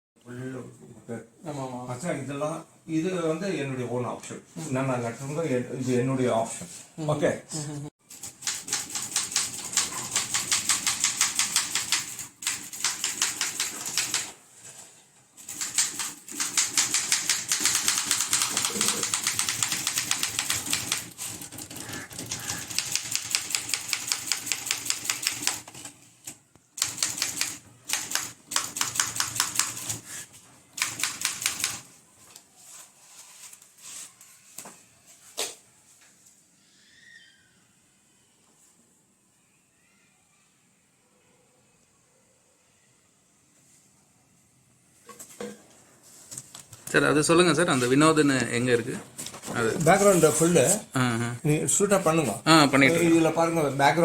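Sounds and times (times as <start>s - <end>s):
typewriter typing: 8.1s - 14.4s, 15.4s - 30.0s, 30.7s - 31.9s.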